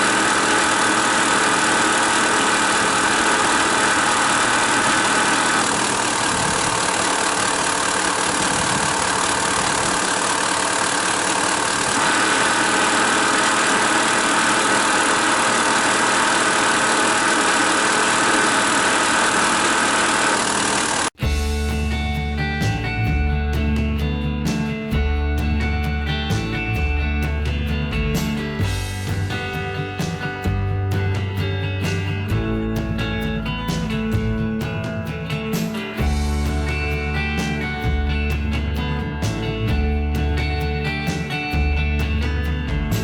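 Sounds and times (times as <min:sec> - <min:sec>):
car engine idling: 0:00.0 - 0:24.4
abnormal mechanical engine noise: 0:00.0 - 0:43.0.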